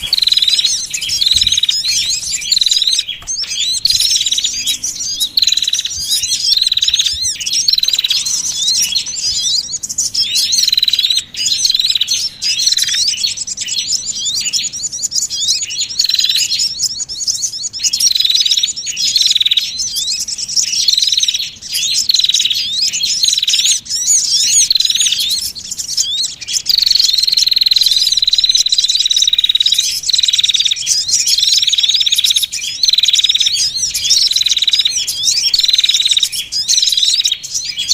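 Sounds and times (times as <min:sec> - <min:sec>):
small songbirds chirping and trilling: 0:00.0 - 0:37.9.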